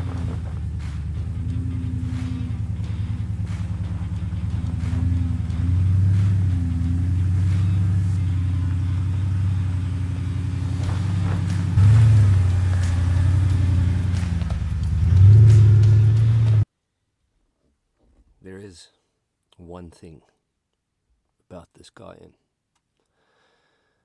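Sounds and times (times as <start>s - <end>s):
suv engine under load: 0.0s - 16.6s.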